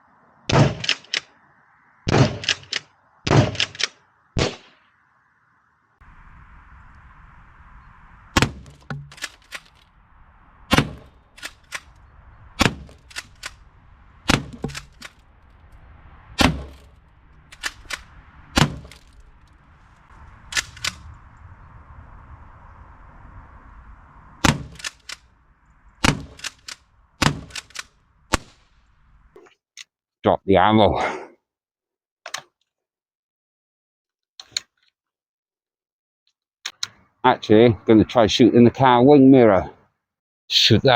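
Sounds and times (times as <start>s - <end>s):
air shotgun shot cracks: 10.7s - 12.0s, 12.6s - 15.2s, 16.4s - 19.2s, 24.4s - 25.3s, 26.0s - 28.7s.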